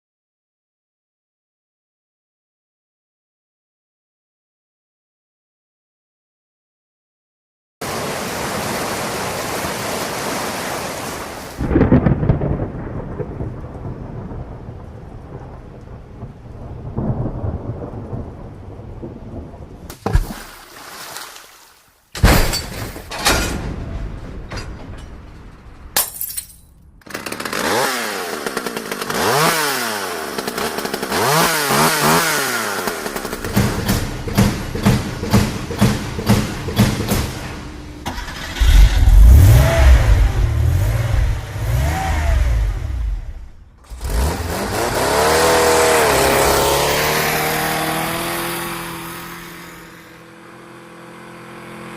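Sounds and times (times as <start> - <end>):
deep rumbling thunder: 11.6 - 19.9, 38.4 - 45.4.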